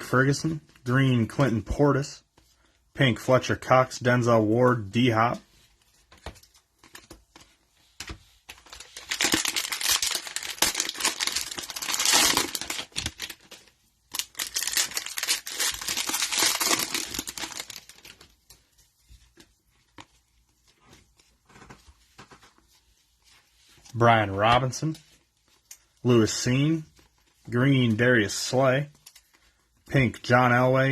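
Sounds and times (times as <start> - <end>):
cellophane wrapper crinkling: 8.6 - 18.6.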